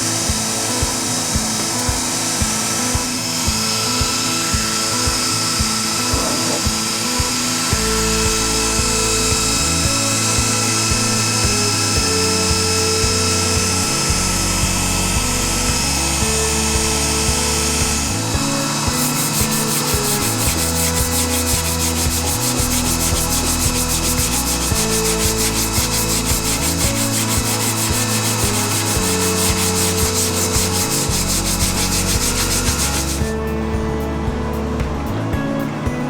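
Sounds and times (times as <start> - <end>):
background music with bass: 0.0 - 36.0
sanding car body panel: 18.9 - 33.2.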